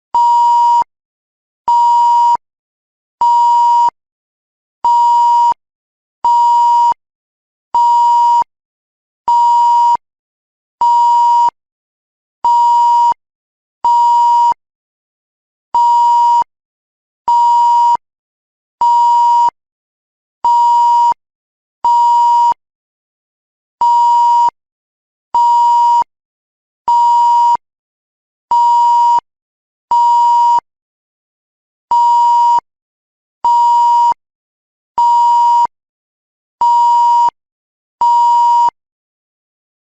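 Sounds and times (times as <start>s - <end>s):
censor bleep: 38.0s - 38.8s.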